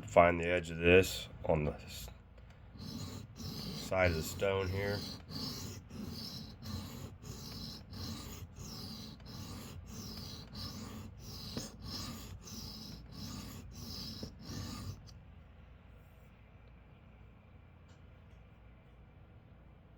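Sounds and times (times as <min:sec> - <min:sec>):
knife scraping sharpening stone: 0:02.8 - 0:15.1.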